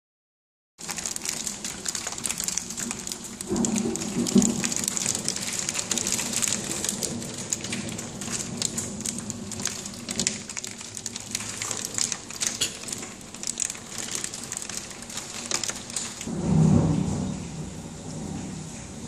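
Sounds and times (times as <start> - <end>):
heavy rain and hail pelting: 0.8 - 19.0
low rumble: 15.4 - 19.0.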